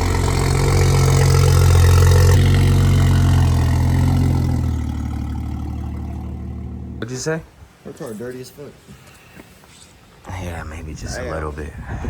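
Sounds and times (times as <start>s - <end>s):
car engine idling: 0.0s - 7.2s.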